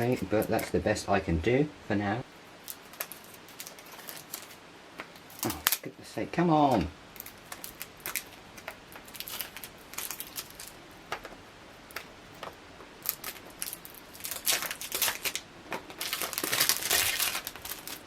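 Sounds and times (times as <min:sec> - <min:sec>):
plastic shrink-wrap crinkling: 0:00.0 - 0:00.7, 0:02.4 - 0:05.9, 0:06.7 - 0:18.0.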